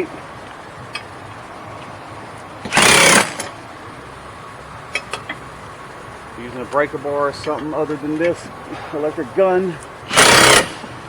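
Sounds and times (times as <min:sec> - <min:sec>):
electric impact gun burst: 0:02.7 - 0:03.5, 0:10.1 - 0:11.0.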